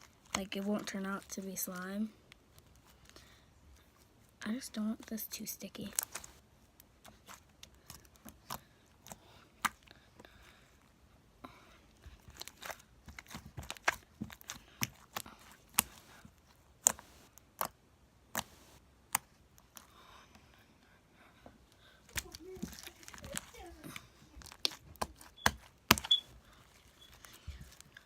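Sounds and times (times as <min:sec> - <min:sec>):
slime squished by hand: 0:12.2 - 0:19.9, 0:22.1 - 0:28.0.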